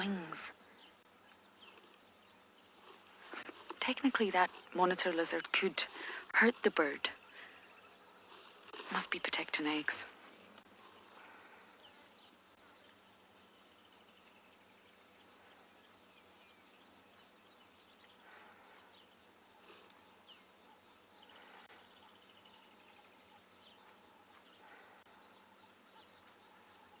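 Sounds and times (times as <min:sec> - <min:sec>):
insects chirring: 0:00.0 - 0:27.0
bird chirps: 0:13.7 - 0:27.0.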